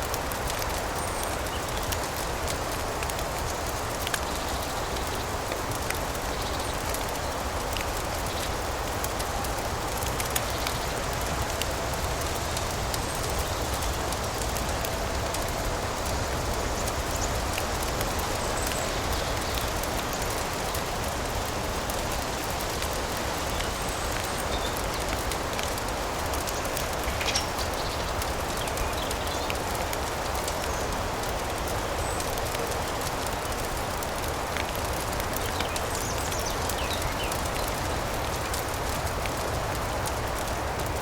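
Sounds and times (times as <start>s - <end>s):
fireplace crackling: 1.4s - 28.6s.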